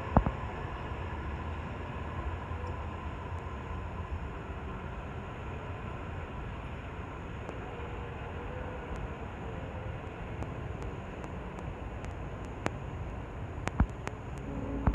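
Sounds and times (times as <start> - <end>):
light rail clicks: 0.0 - 0.7, 7.4 - 7.8, 8.8 - 9.2, 10.1 - 14.9
train rumbling on rails: 0.0 - 14.9.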